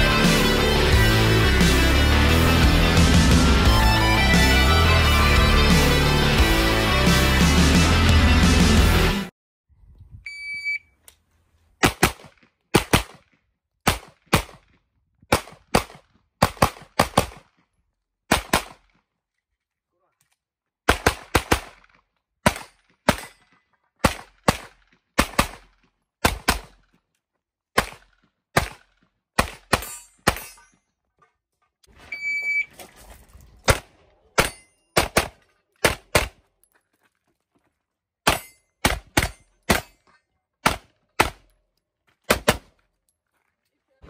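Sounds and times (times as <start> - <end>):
pistol shots: 11.8 - 14.7, 15.3 - 17.5, 18.3 - 18.9, 20.9 - 23.3, 24.0 - 26.8, 27.8 - 30.5, 33.7 - 36.4, 38.3 - 39.9, 40.6 - 41.5, 42.3 - 42.7.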